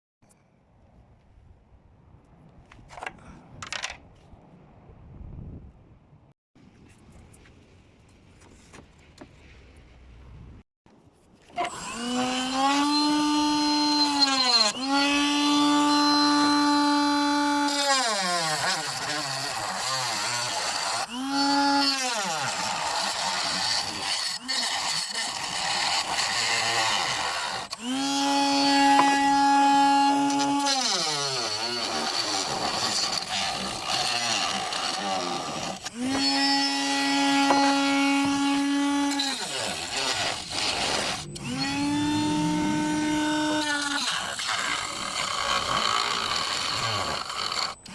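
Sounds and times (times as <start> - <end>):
electric power tool humming: 11.6 - 47.9
rough noise: 31.3 - 47.9.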